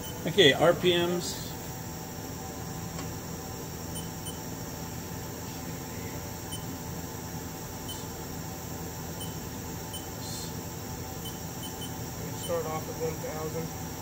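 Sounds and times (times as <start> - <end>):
machine humming: 0.0 - 14.0
faint short beeps: 9.2 - 10.1, 11.2 - 12.6.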